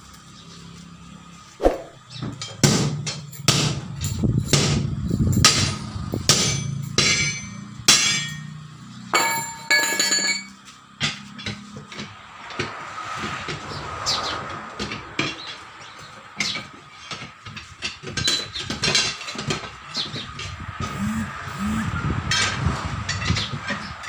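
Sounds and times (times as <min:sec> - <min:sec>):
hammer striking steel wheel: 0:06.3 - 0:08.5, 0:09.2 - 0:10.5.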